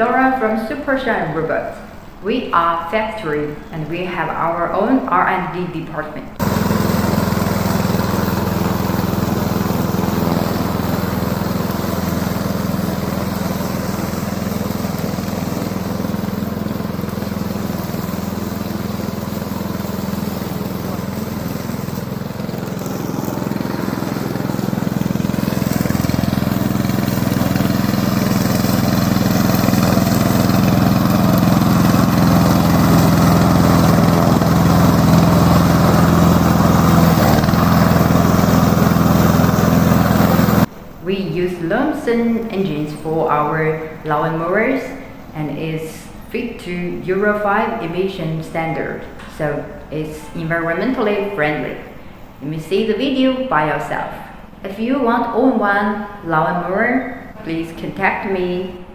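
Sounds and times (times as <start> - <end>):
lawn mower engine running: 6.4 - 41.0.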